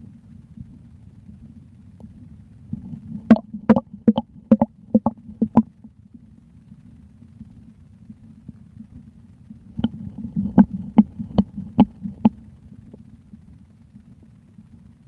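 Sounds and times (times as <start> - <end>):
low steady rumble: 0.0 - 15.0
stomach gurgling and popping: 2.0 - 5.8, 9.7 - 13.1.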